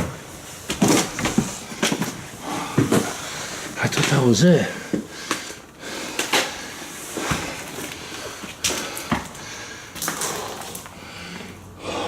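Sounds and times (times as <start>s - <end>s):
footsteps on floor: 0.0s - 3.2s.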